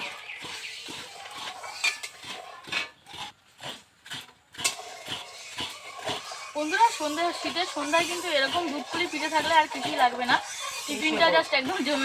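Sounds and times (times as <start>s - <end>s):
metal spoon scraping iron pan: 1.1s - 3.0s, 4.6s - 12.0s.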